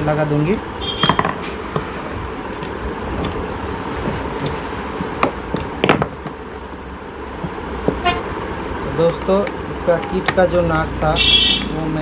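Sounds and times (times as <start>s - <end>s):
background traffic: 0.0s - 12.0s
sharp clicks and knocks: 0.5s - 1.9s, 2.5s - 8.1s.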